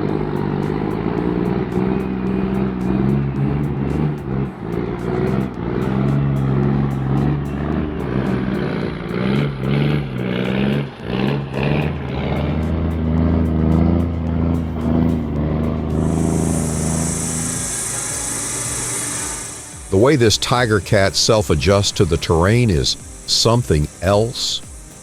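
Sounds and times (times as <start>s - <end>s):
heavy diesel engine running: 0.0s - 25.0s.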